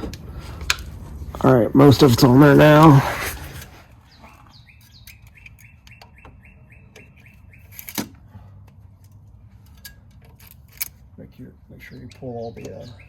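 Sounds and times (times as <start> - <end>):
bird chirping: 4.0 - 7.9, 11.2 - 13.0.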